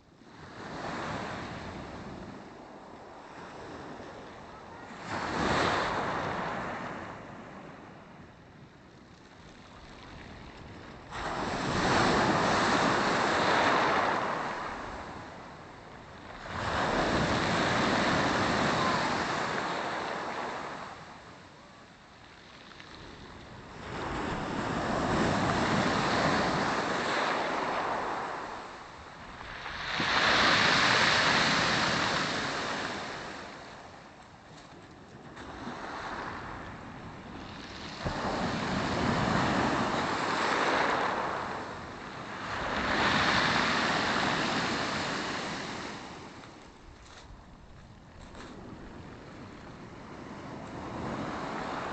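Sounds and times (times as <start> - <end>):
waves breaking on shore: 3.3 - 7.2, 10.2 - 21.5, 22.9 - 34.2, 35.3 - 47.5.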